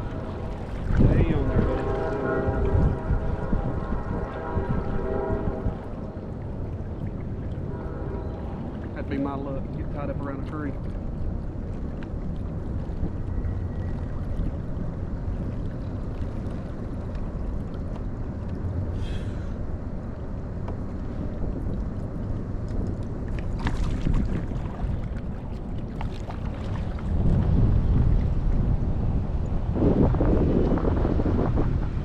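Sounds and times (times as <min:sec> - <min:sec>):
wind buffeting microphone: 0:00.0 - 0:32.0.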